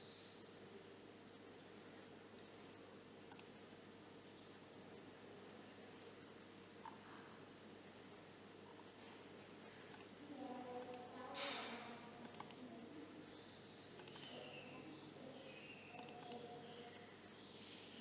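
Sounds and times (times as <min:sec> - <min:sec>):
mechanical keyboard keystroke clicks: 0:12.2 - 0:12.6, 0:14.0 - 0:14.3, 0:16.0 - 0:16.4.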